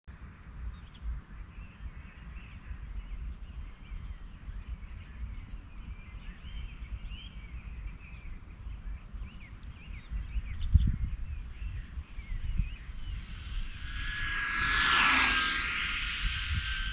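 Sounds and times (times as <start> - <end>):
steady low rumble: 11.5 - 16.9.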